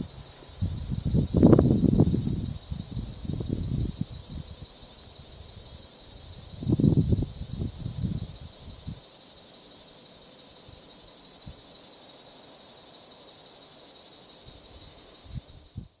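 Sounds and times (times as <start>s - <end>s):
cicada buzzing: 0.0s - 16.0s.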